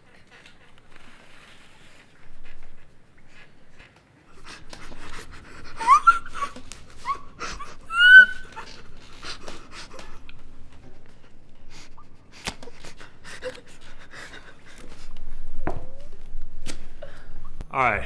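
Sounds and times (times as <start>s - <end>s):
person panting: 0.0s - 17.6s
short high whimpers: 4.4s - 17.6s.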